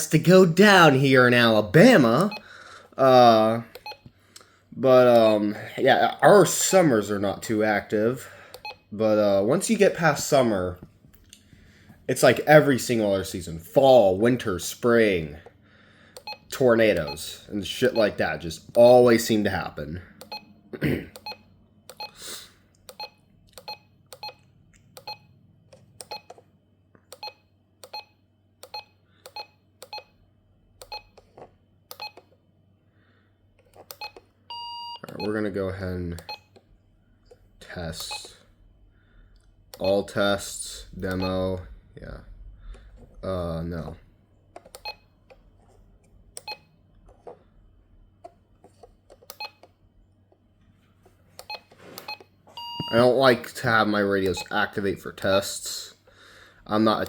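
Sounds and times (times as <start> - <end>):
short radio beeps: 51.5 - 53.2.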